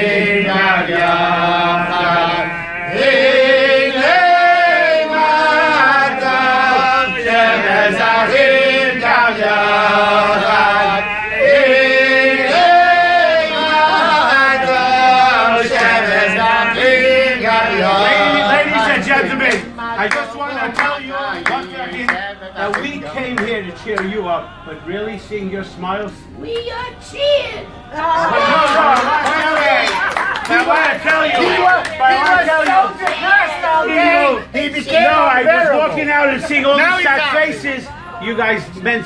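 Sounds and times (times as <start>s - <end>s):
men singing a chant-like melody: 0.0s - 25.4s.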